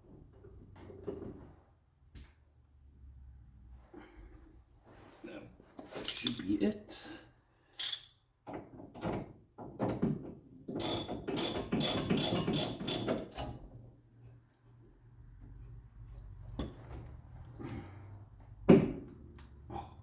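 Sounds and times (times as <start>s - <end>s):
hand tools clicking and clattering: 5.8s - 6.6s, 7.8s - 8.1s.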